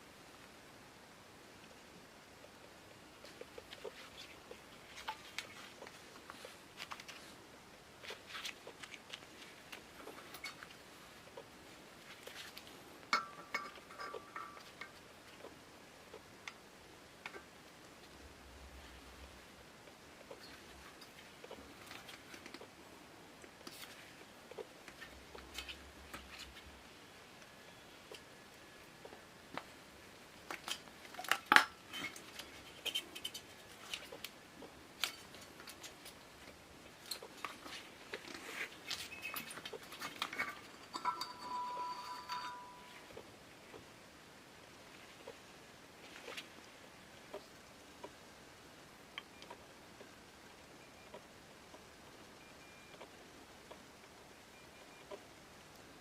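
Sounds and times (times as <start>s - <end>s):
metal lantern parts clinking: 13.1s - 14.9s, 40.2s - 43.0s.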